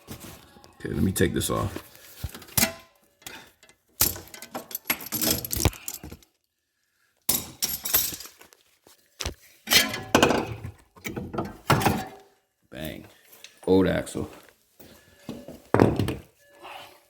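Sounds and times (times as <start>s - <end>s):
metal tools clinking and clanking: 2.2s - 6.3s, 7.3s - 8.6s, 9.7s - 12.2s.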